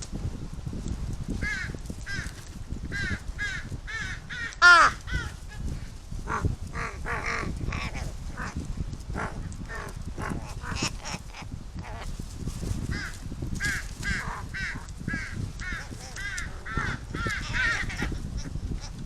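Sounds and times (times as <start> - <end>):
wind rumble on microphone: 0.0 - 19.0
crows cawing: 1.4 - 5.4, 6.3 - 8.6, 9.7 - 12.0, 12.9 - 18.5.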